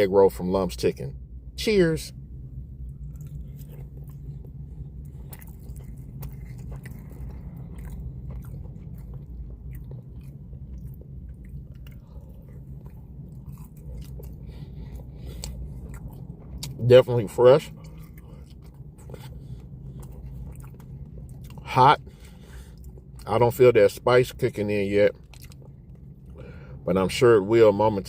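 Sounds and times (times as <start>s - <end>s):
low hum: 0.0s - 28.0s
person chewing crunchy food: 2.8s - 23.5s, 25.1s - 26.6s.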